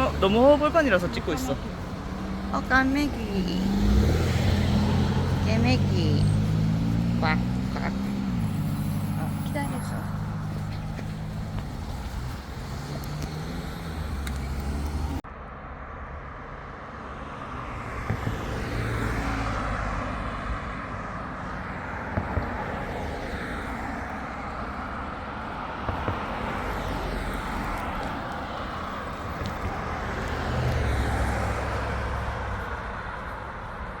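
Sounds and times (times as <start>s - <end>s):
low engine hum: 0.0s - 15.2s
cars going past: 0.0s - 34.0s.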